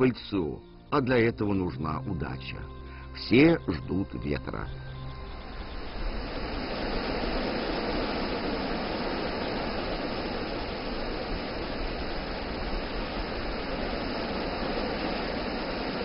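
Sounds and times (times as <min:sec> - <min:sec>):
wind blowing: 0:04.6 - 0:16.0.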